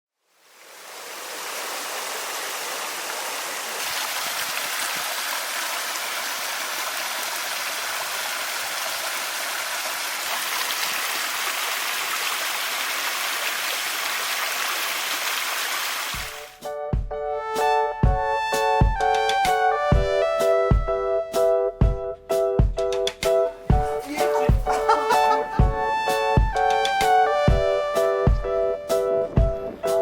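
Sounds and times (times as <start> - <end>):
flowing water rushing: 0.2 - 16.6.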